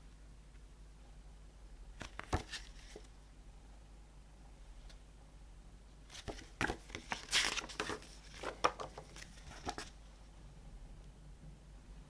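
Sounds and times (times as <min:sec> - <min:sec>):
packaging crinkling: 0:06.1 - 0:09.9.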